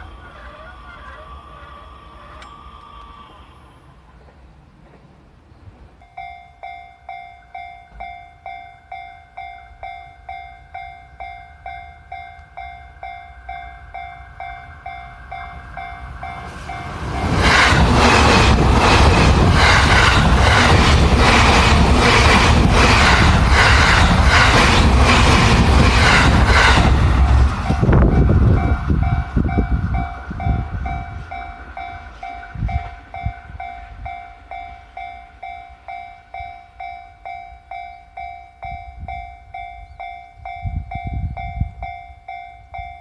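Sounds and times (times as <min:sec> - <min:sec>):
train wheels clattering over rails: 0:16.2 - 0:30.2.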